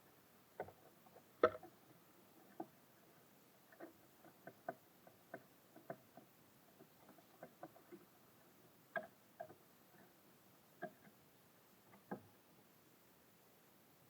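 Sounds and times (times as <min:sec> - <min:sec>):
birds pecking on feeder: 0:03.7 - 0:10.2, 0:10.8 - 0:11.2.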